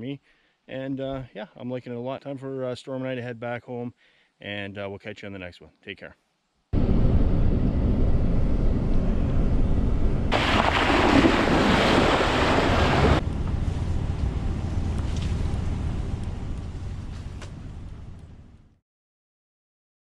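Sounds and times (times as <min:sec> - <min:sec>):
wind buffeting microphone: 0:06.8 - 0:18.5.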